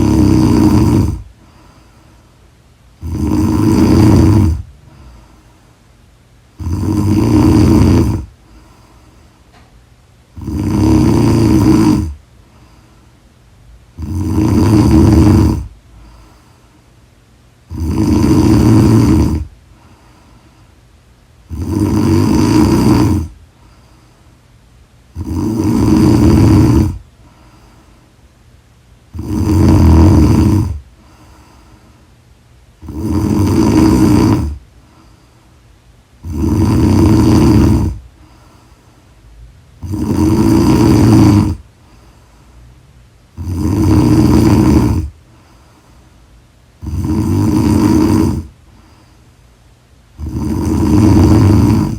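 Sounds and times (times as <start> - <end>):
woman snoring: 0.0 - 1.8, 3.0 - 5.3, 6.6 - 8.9, 10.3 - 12.2, 13.9 - 16.4, 17.7 - 20.0, 21.5 - 23.4, 25.1 - 27.5, 29.1 - 31.7, 32.8 - 34.6, 36.2 - 38.1, 39.8 - 41.7, 43.3 - 45.2, 46.8 - 48.6, 50.2 - 51.9
quiet breathing: 0.0 - 51.9.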